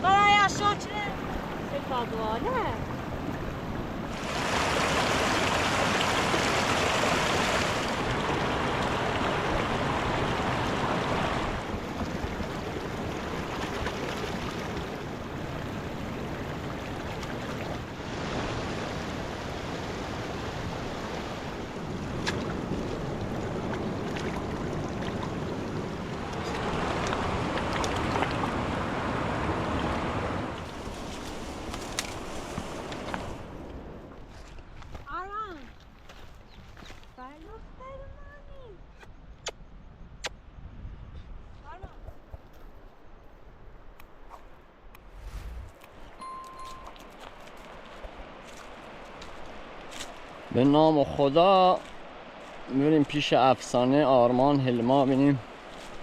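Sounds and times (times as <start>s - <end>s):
river water rushing: 0.0s - 34.0s, 45.5s - 56.0s.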